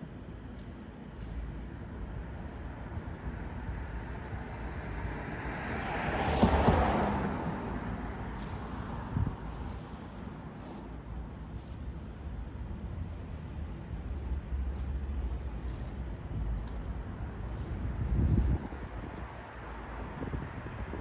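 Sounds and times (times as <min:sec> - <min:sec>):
low traffic rumble: 0:00.0 - 0:21.0.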